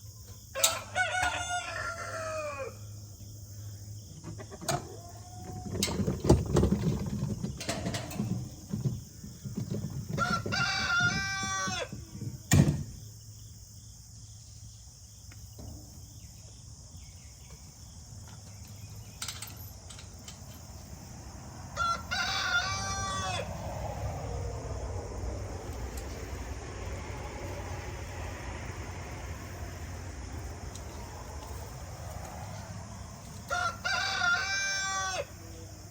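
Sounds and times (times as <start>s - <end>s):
rooster crowing: 0.5s - 3.0s, 10.1s - 12.2s, 21.6s - 25.2s, 32.4s - 35.8s.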